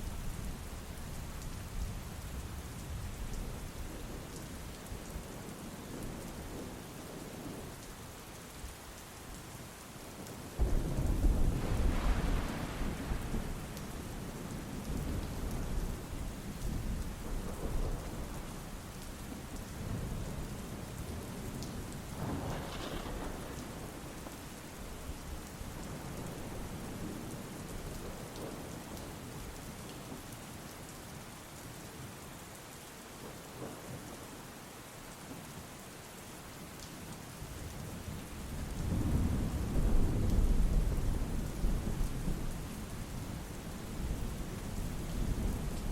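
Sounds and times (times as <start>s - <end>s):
steady rain falling: 0.0s - 45.9s
thunder rumbling: 10.6s - 18.8s, 19.4s - 28.6s.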